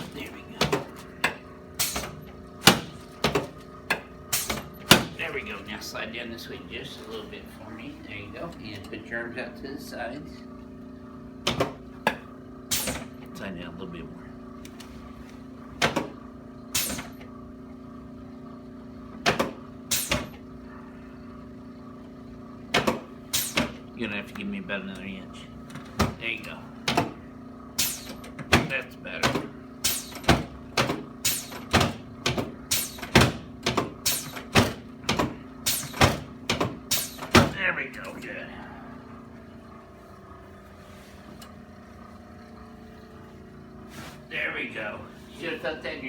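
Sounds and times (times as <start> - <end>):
steady low hum: 0.0 - 46.0
body sliding on padded table: 43.9 - 44.3.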